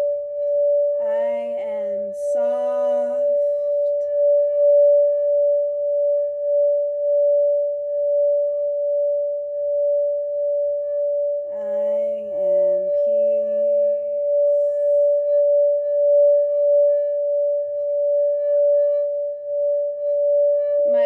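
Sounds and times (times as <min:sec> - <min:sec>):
singing bowl ringing: 0:00.0 - 0:21.0
low vocal tones: 0:01.0 - 0:04.2.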